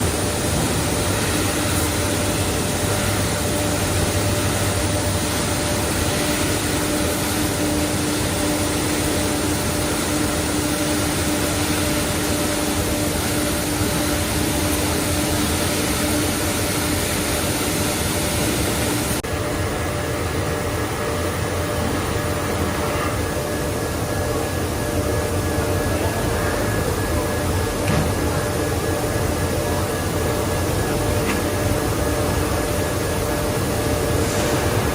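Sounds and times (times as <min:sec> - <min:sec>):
steady hum: 0:00.0 - 0:34.9
washing machine mechanical rush: 0:00.0 - 0:34.9.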